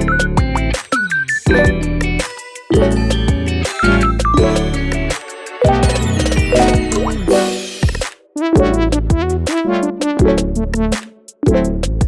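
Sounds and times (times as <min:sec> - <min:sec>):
electronic music with heavy bass: 0:02.8 - 0:11.0.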